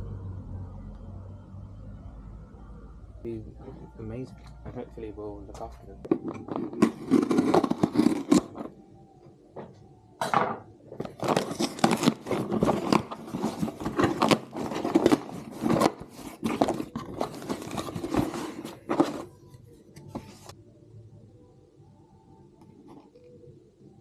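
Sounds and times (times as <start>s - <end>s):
paper and cardboard tearing: 6.4s - 8.7s, 11.1s - 19.3s.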